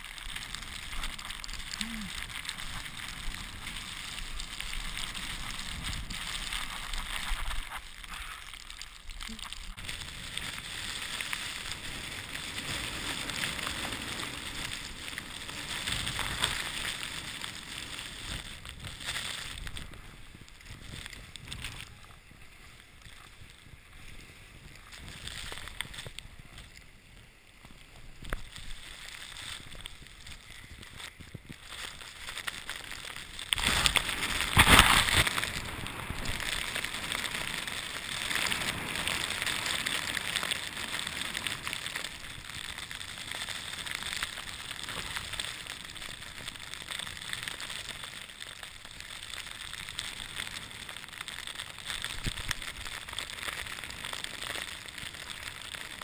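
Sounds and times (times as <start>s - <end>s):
snowboard hissing through snow: 0.0s - 21.9s, 32.9s - 42.4s.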